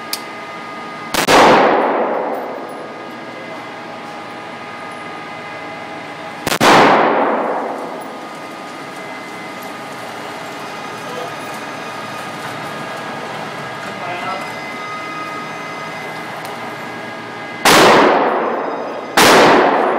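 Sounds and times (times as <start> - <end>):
rifle shot with echo: 1.2 - 2.5, 6.5 - 7.8, 17.6 - 18.6, 19.2 - 19.9.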